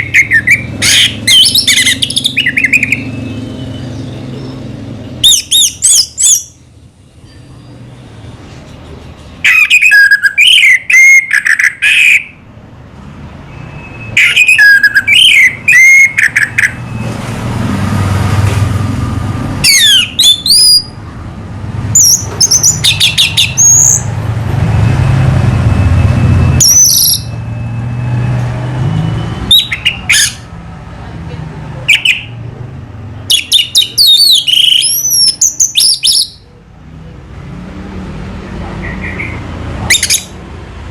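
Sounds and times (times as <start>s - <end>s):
thrush singing whistled phrases: 0.0s - 4.2s, 5.2s - 6.6s, 9.4s - 12.4s, 13.4s - 17.1s, 19.6s - 21.0s, 22.0s - 24.1s, 26.5s - 27.7s, 29.3s - 30.5s, 33.3s - 36.4s.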